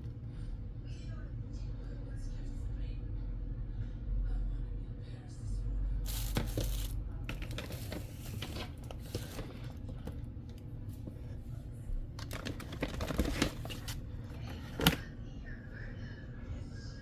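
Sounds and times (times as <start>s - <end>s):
rustling and crinkling: 6.1s - 15.1s.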